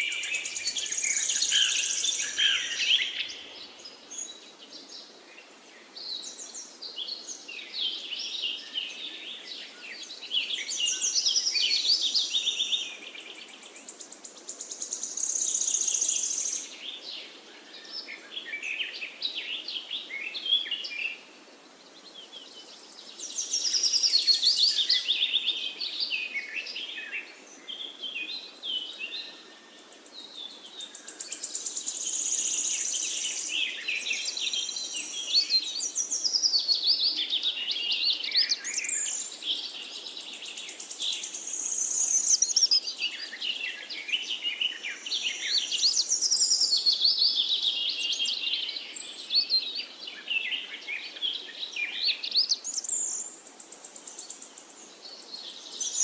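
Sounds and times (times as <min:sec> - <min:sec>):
birds chirping and singing: 0:00.0 - 0:21.2, 0:22.1 - 0:56.0.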